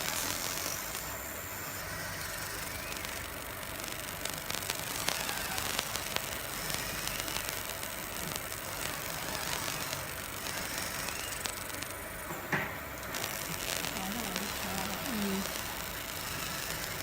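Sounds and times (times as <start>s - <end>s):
laser engraving hiss: 0.0s - 17.0s.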